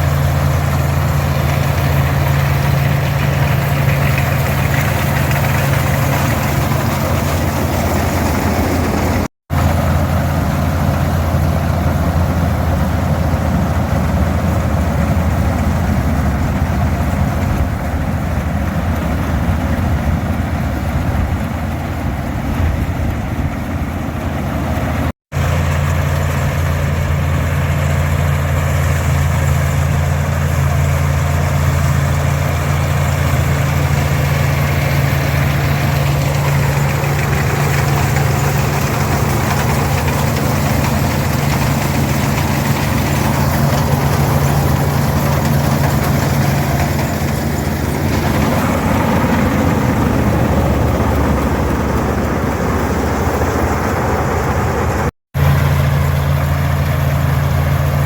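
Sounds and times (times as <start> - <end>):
combine machinery running: 0.0 - 58.0
tractor diesel engine drone: 0.0 - 58.0.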